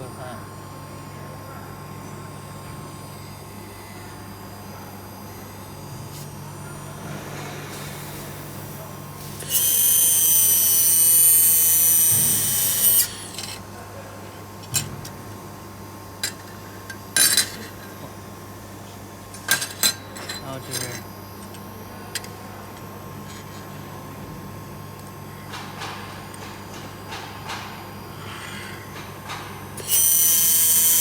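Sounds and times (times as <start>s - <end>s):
laser welder hissing whine: 6.2s - 13.6s, 29.7s - 31.0s.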